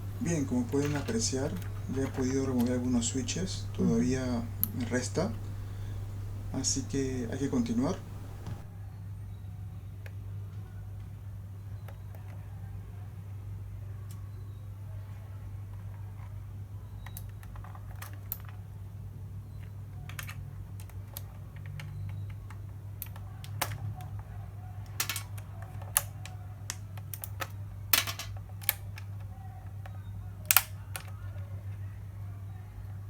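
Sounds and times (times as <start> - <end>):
keyboard switches clicking and snapping: 0.0 - 8.7
low hum: 0.0 - 8.7.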